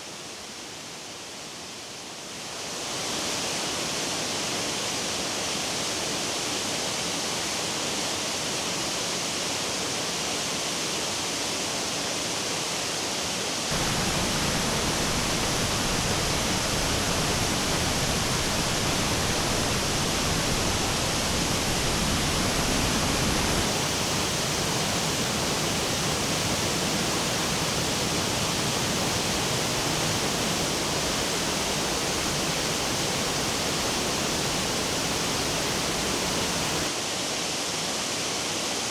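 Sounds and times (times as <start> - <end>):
rushing water: 13.7 - 37.3.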